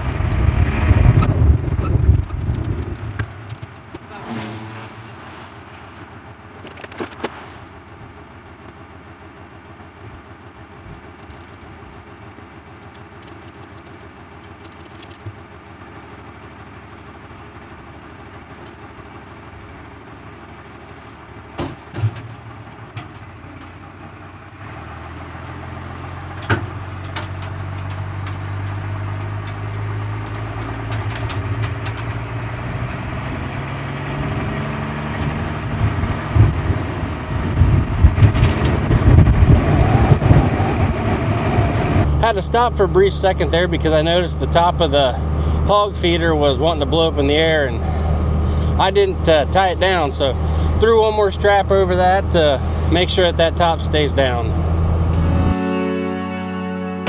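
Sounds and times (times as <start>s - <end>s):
vehicle engine running: 0.0s - 57.0s.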